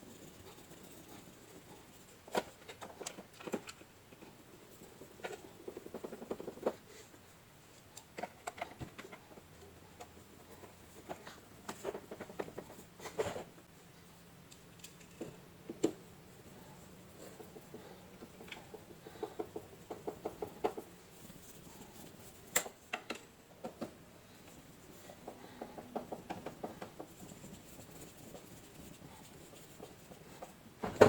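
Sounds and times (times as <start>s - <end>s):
hands handling parts and tools: 14.4s - 31.0s.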